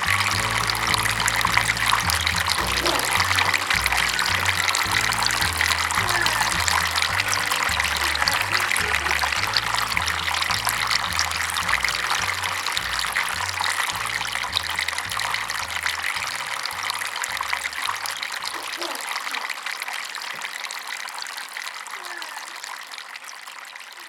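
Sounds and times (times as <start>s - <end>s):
background music with bass line: 0.0s - 18.3s
water splashing down a waterfall: 0.0s - 23.0s.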